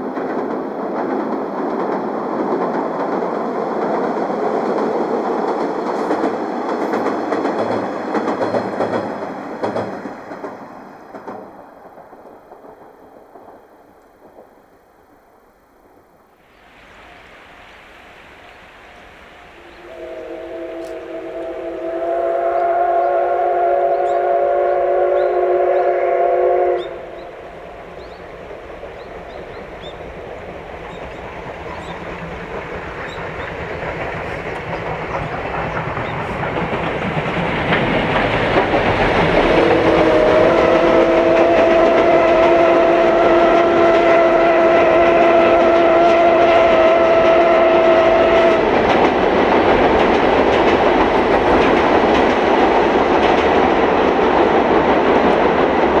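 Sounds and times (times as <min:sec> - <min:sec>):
train rumble and clickety-clack: 0:00.0 - 0:56.0
steam locomotive whistle: 0:16.6 - 0:28.2, 0:37.8 - 0:49.1.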